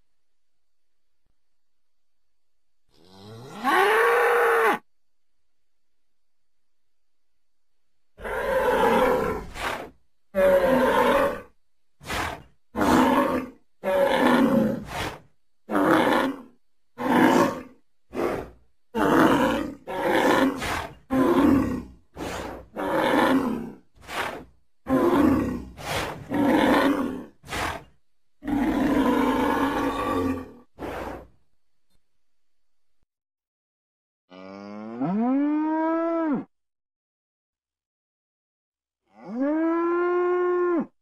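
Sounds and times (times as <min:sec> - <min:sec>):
dinosaur roars and grunts: 0:08.2 - 0:31.3, 0:34.3 - 0:36.5, 0:39.1 - 0:40.9.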